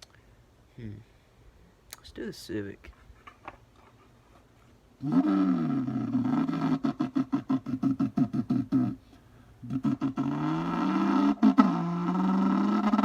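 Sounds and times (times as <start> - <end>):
man imitating an engine into a bucket: 9.6 - 13.0.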